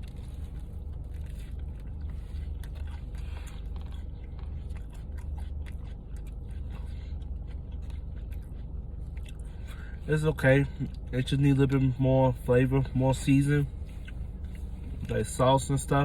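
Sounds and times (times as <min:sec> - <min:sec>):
person chewing crunchy bread: 0:00.0 - 0:16.0
steady low hum: 0:00.0 - 0:16.0.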